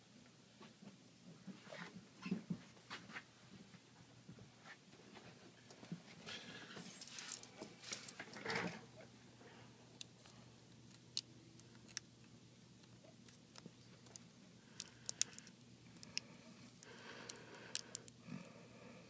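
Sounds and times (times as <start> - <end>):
small tools clicking and scraping: 13.2 - 18.2.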